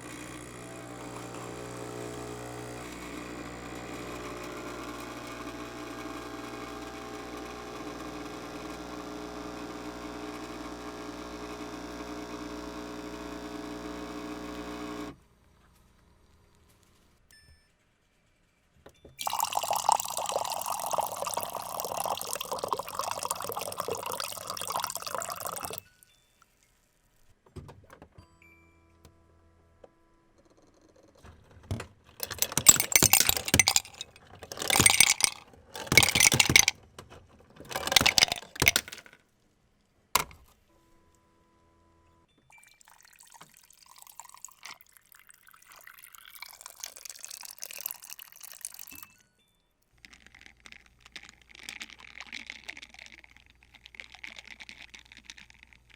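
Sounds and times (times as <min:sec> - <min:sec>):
coffee machine pouring: 0:00.0 - 0:15.2, 0:19.2 - 0:25.9, 0:32.1 - 0:36.8, 0:37.5 - 0:39.2, 0:42.5 - 0:49.1, 0:50.0 - 0:55.9.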